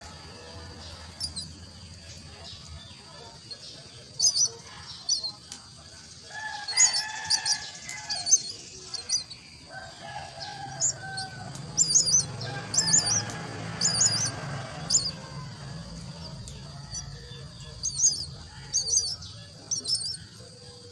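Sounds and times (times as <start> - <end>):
bird chicks cheeping: 0.0 - 20.9
lower longer bird calls: 6.2 - 15.8, 16.4 - 20.9.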